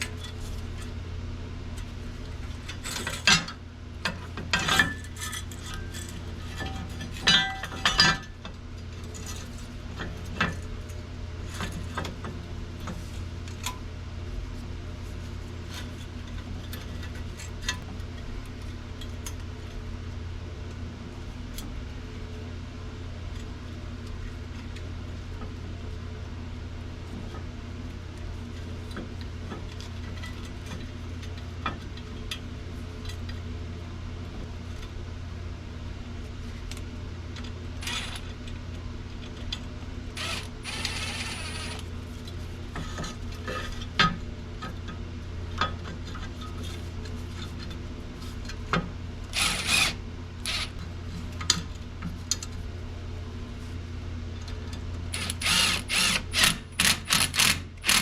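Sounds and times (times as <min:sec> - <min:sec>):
steady low hum: 0:00.0 - 0:58.0
hand tools clinking on metal: 0:04.5 - 0:08.2.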